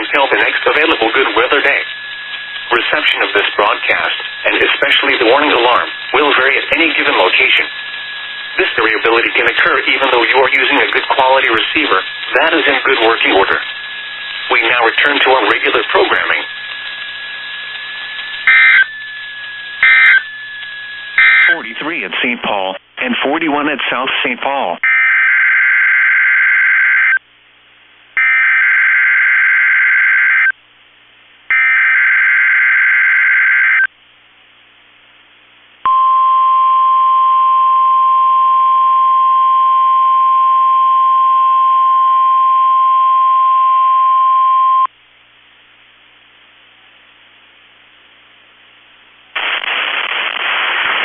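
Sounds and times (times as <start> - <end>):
digital header data bursts: 0.0 - 16.7, 18.3 - 19.0, 19.6 - 22.3, 49.4 - 51.0
steady warning alarm tone: 0.0 - 21.8, 24.8 - 27.2, 28.2 - 30.5, 31.5 - 33.9.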